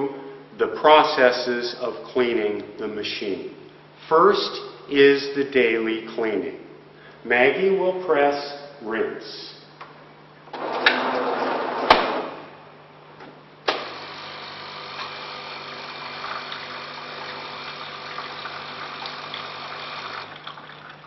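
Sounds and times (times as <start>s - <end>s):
water pump humming: 13.6s - 21.0s
coffee machine mechanical whirring: 13.7s - 20.3s.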